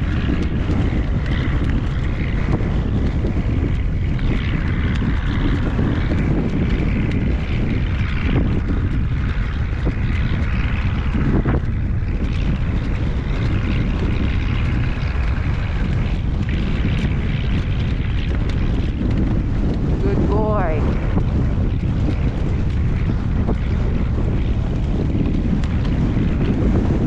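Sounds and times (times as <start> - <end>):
wind blowing across microphone: 0.0 - 27.0.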